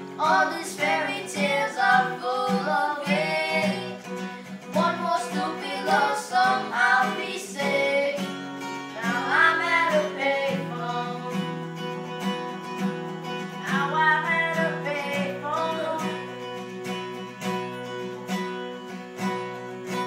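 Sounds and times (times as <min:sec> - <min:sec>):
wordless singing: 0:00.0 - 0:11.8, 0:13.6 - 0:16.3
acoustic guitar chords: 0:00.0 - 0:20.0.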